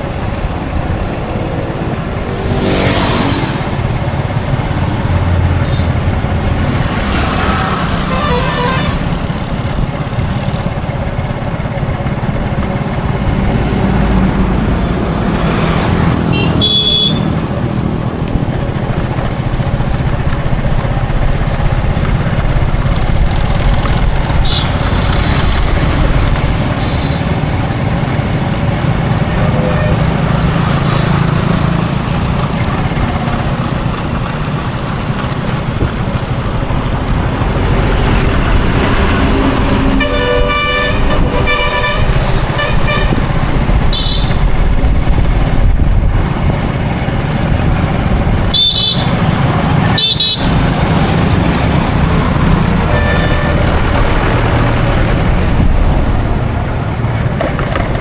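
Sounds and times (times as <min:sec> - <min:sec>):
low rumble of traffic: 0:00.0 - 0:58.0
vehicles passing by: 0:00.0 - 0:58.0
short horn toots: 0:07.9 - 0:09.3, 0:39.8 - 0:43.2, 0:52.9 - 0:54.0.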